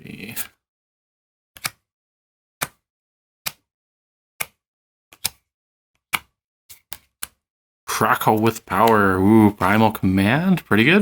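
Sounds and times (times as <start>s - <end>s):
trading cards clicking: 8.2s - 9.8s.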